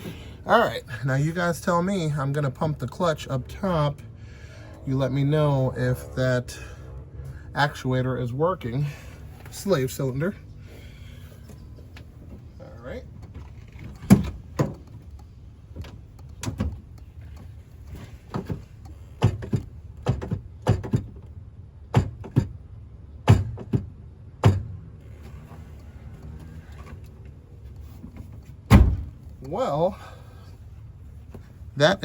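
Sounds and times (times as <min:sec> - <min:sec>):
clutch pedal knocking: 0:13.2 - 0:21.3.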